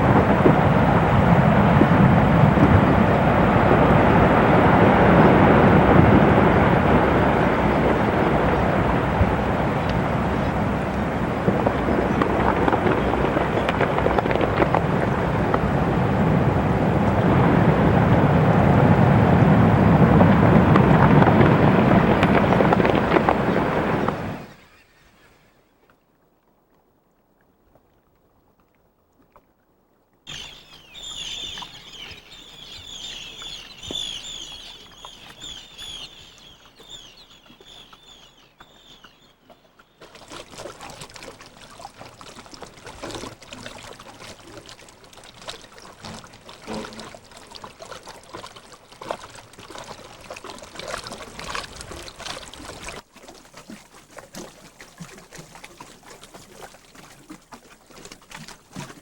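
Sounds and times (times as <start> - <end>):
splashing trickling water: 0.0 - 17.3, 30.3 - 59.0
bird calling in short high notes: 30.3 - 39.4.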